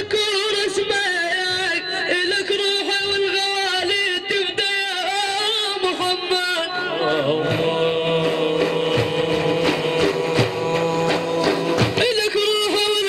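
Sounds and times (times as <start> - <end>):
devotional praise singing: 0.0 - 13.0
musical accompaniment: 6.7 - 13.0.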